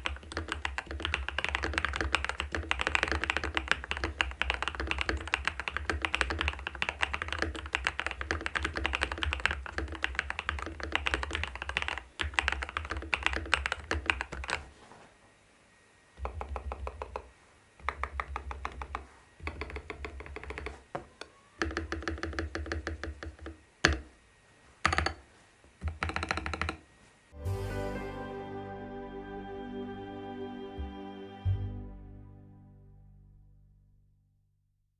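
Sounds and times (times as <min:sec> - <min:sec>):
mechanical keyboard typing: 0:00.0 - 0:14.6, 0:16.2 - 0:20.7, 0:25.8 - 0:26.8.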